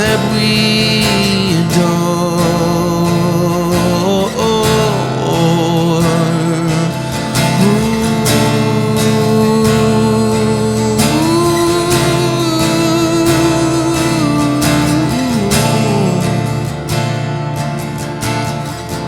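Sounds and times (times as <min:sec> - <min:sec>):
person singing long held notes: 0:00.0 - 0:16.7
acoustic guitar strummed: 0:00.0 - 0:19.0.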